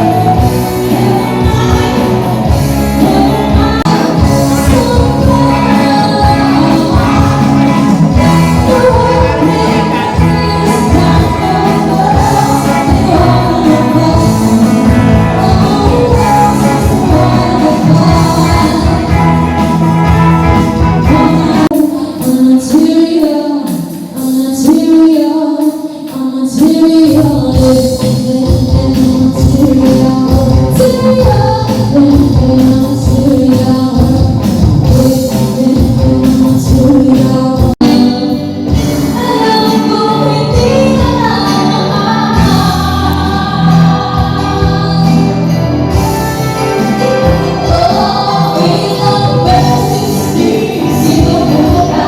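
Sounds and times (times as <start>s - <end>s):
song with singing: 0.0s - 52.0s.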